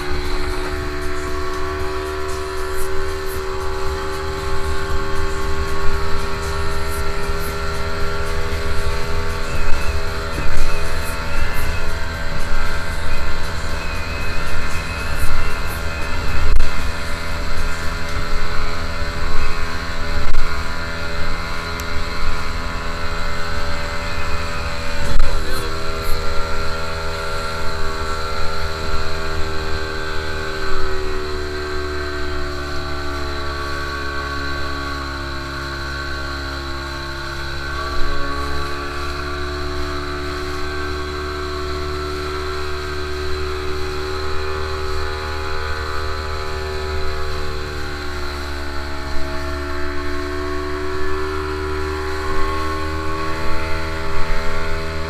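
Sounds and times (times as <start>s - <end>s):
motorboat engine running: 0.0s - 55.0s.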